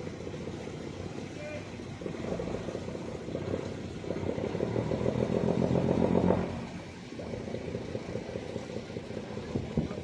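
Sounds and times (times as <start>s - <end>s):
engine running: 0.0s - 10.0s.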